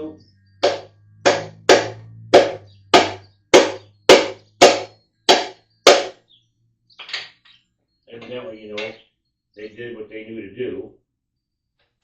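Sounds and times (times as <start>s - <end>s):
hammer blows on metal: 0.6s - 6.2s.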